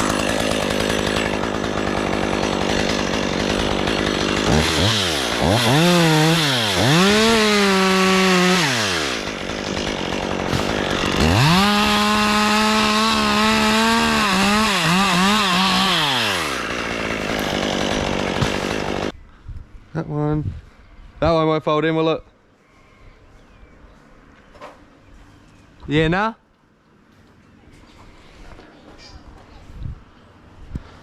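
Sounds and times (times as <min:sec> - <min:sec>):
chainsaw revving: 0:00.0 - 0:19.1.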